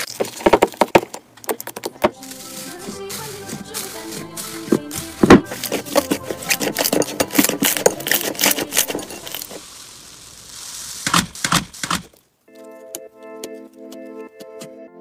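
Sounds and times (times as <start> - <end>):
slime crackling and popping: 2.2 - 12.2.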